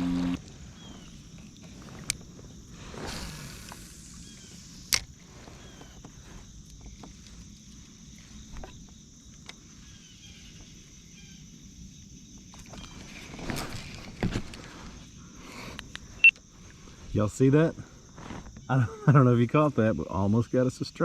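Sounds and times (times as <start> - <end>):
low steady background noise: 0.0 - 21.0
small ticks: 0.2 - 2.6, 3.2 - 9.6, 15.6 - 16.8.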